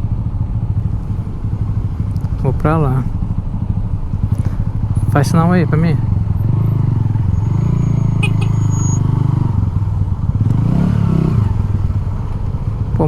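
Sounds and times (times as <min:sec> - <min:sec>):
motorcycle engine revving: 0:01.5 - 0:13.0.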